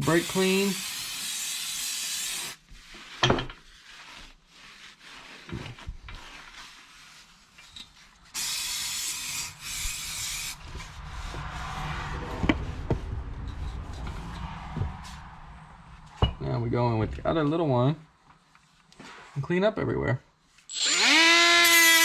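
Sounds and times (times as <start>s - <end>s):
low scrubbing: 7.7s - 18.6s
aerosol spray hissing: 8.4s - 10.6s.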